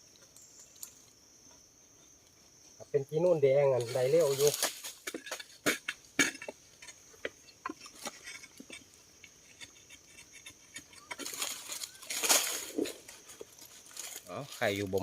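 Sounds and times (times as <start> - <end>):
high insect drone: 0.0 - 15.0
scraping rustle: 3.7 - 7.0, 7.6 - 15.0.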